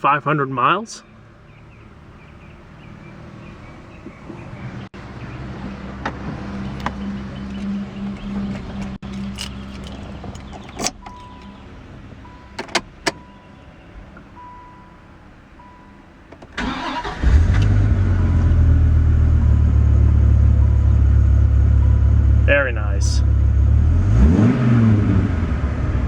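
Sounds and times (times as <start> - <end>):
starter cranking: 6.7 - 11.4, 16.6 - 17.8.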